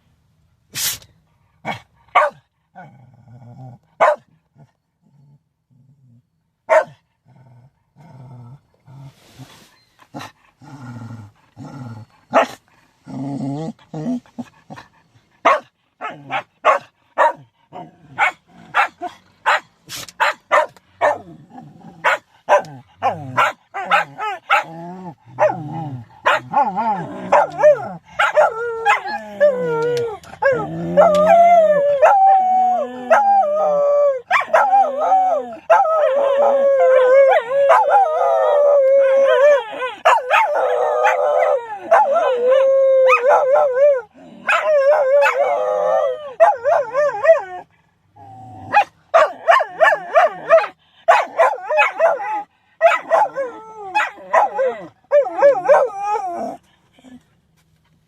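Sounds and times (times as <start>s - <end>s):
dogs sneezing: 0.7s - 1.8s, 19.8s - 20.4s
dogs barking: 1.7s - 2.5s, 4.0s - 4.3s, 6.7s - 7.0s, 12.3s - 12.6s, 15.4s - 21.4s, 22.0s - 25.6s, 26.2s - 29.2s, 34.3s - 34.9s, 40.0s - 42.2s, 44.4s - 45.6s, 48.7s - 56.0s
dogs growling: 7.1s - 15.4s, 20.8s - 31.8s
dogs howling: 22.0s - 47.7s, 48.6s - 56.6s.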